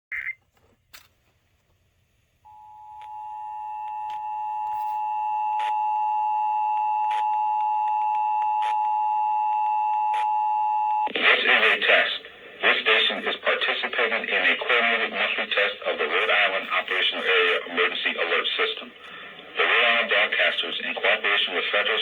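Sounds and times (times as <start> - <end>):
person making announcement: 11.1 - 22.0.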